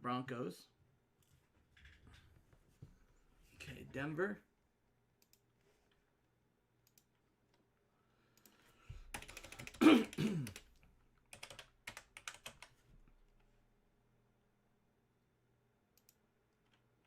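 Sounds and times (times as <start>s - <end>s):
computer keys clicking: 8.4s - 12.8s, 16.0s - 16.9s.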